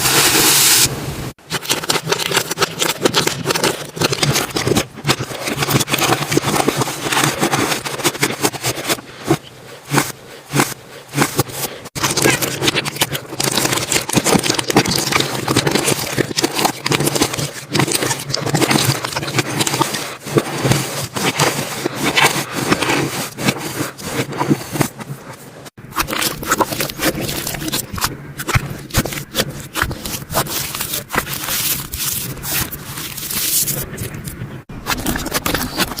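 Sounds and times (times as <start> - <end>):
slime squishing with wet crackles: 9.9 - 24.9.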